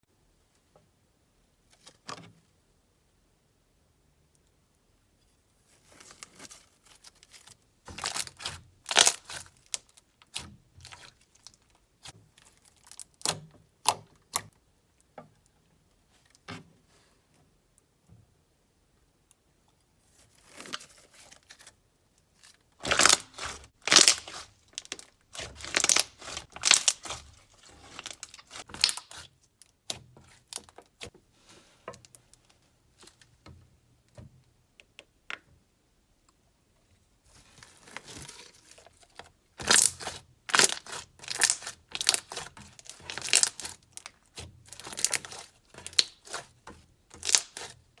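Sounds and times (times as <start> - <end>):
slime squishing and popping: 22.8 - 27.2.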